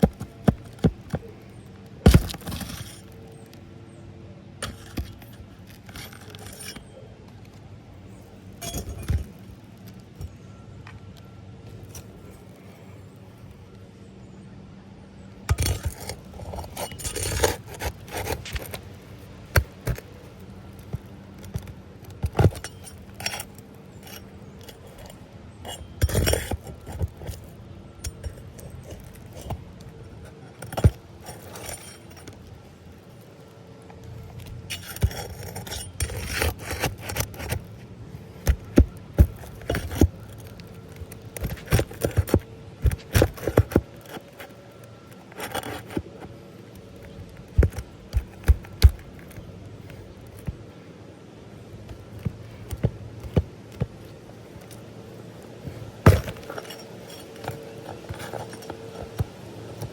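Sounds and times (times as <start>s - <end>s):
tools scraping on roof shingles: 0.0s - 3.6s, 4.6s - 10.4s, 15.5s - 50.9s, 51.5s - 59.9s
light metallic rattles: 51.6s - 59.9s.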